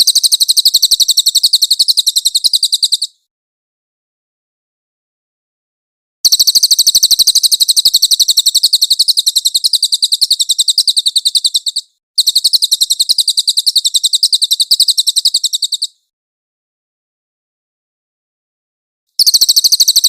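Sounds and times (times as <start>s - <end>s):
bird singing high-pitched trill: 0.0s - 3.2s, 6.2s - 16.1s, 19.2s - 20.0s.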